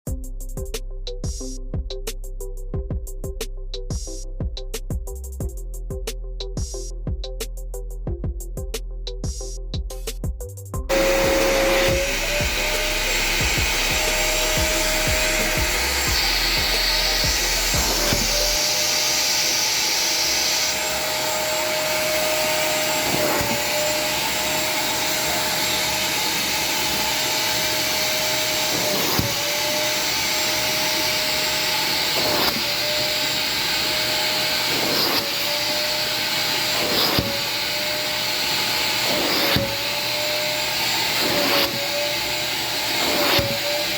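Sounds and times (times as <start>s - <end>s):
vacuum cleaner running: 10.9s - 43.9s.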